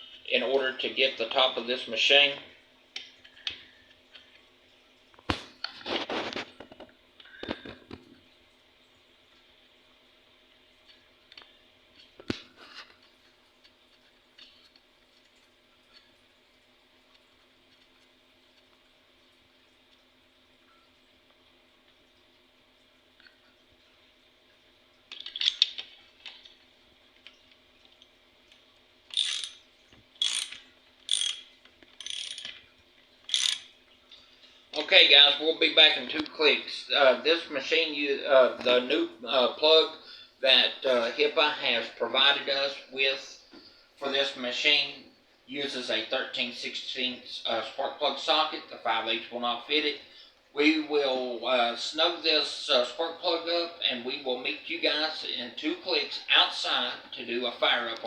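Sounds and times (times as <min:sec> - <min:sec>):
ratchet wrench clicking: 0:29.1 - 0:29.6, 0:30.2 - 0:32.5, 0:33.3 - 0:33.7.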